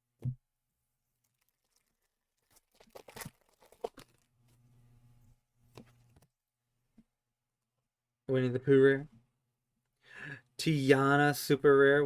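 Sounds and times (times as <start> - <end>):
foil wrapper tearing and crinkling: 1.2 - 4.3
faint low hum: 3.9 - 6.2.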